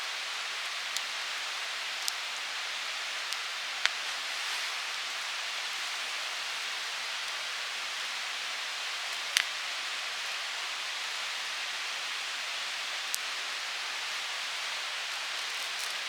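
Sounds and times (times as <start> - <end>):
campfire hissing: 0.0 - 16.0
fire crackling pops: 0.7 - 5.7.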